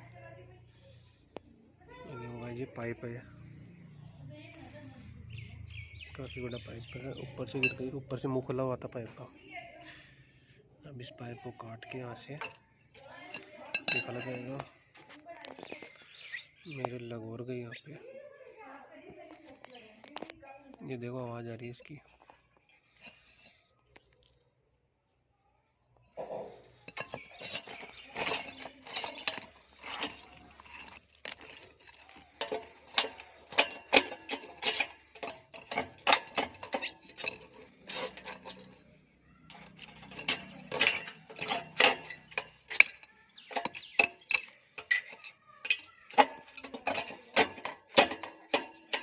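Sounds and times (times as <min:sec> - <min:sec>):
metal tools clinking on pipe: 0:06.6 - 0:08.6, 0:11.8 - 0:14.8, 0:26.7 - 0:49.0.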